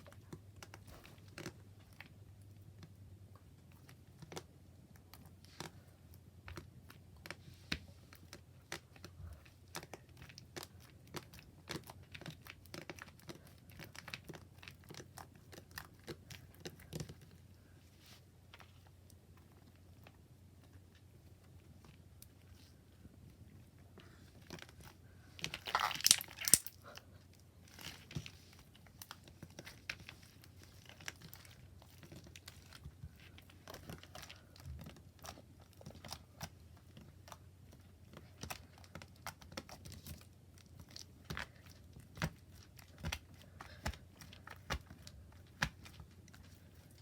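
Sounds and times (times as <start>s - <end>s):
hands squishing slime: 0.0s - 18.9s, 21.7s - 47.0s
crackling slime squelches: 0.0s - 47.0s.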